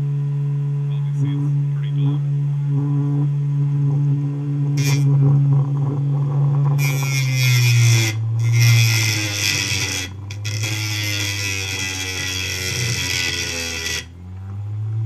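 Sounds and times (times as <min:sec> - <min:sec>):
grinder motor humming: 0:00.8 - 0:15.0
rock scraping on sandpaper: 0:06.8 - 0:14.1.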